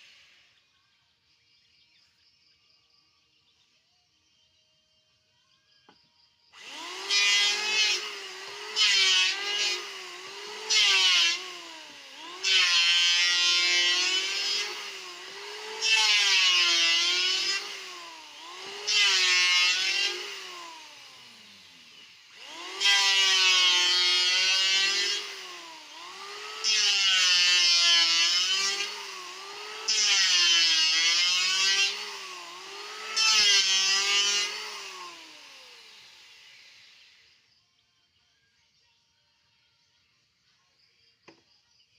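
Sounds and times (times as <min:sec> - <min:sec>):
planer blade rasping wood: 0:06.6 - 0:37.0
electric planer motor whining: 0:06.6 - 0:37.3.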